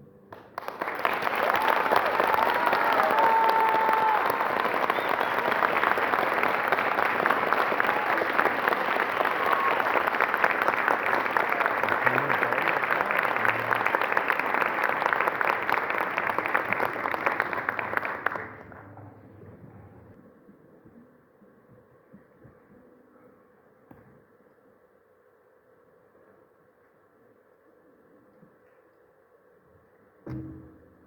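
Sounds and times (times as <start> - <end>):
audience applauding: 0.3 - 19.3.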